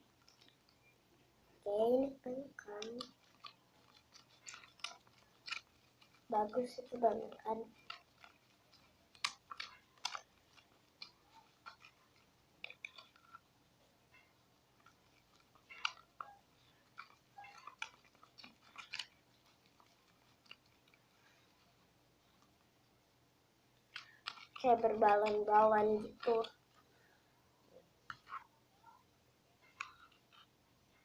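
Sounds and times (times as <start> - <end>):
spoon stirring foamy water: 2.6 - 22.6, 23.8 - 27.1.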